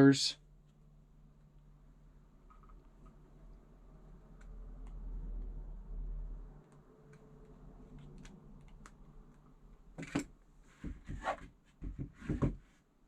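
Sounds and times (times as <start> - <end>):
plastic object knocks and rustles: 10.0 - 12.7.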